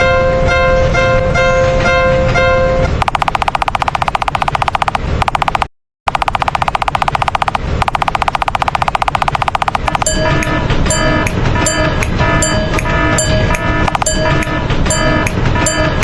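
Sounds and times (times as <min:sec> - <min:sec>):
railroad crossing bell ringing: 0:09.9 - 0:16.0.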